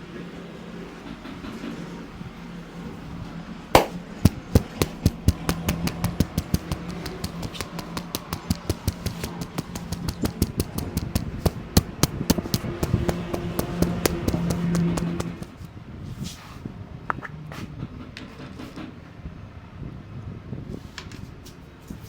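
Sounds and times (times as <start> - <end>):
hands slapping head: 3.8 - 15.6.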